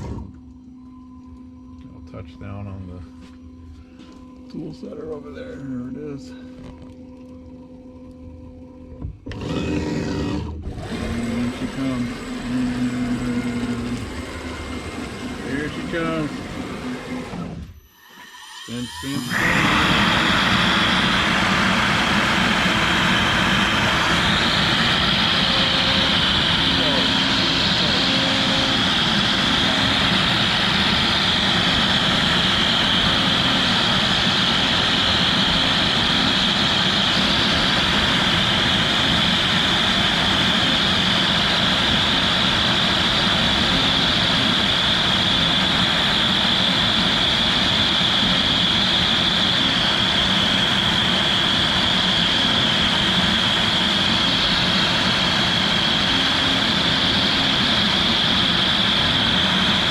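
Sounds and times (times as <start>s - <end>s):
router spindle whining: 0.0s - 0.6s, 9.0s - 59.9s.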